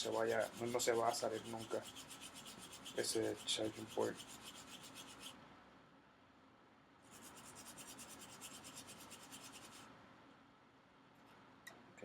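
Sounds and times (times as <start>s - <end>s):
rapid scrubbing strokes: 0.0s - 5.4s, 7.1s - 9.9s.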